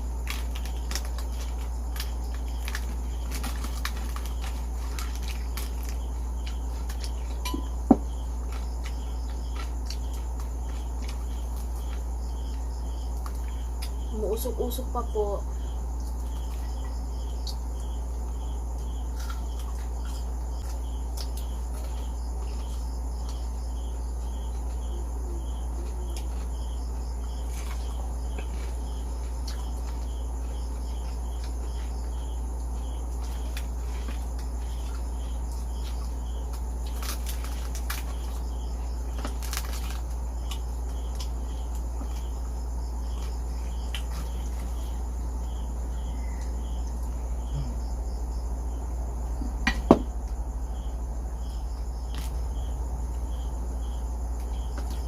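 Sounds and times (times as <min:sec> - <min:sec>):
crunching of crispy food: 0:00.0 - 0:14.1, 0:15.6 - 0:25.5, 0:26.1 - 0:45.7
crickets chirping: 0:00.0 - 0:55.0.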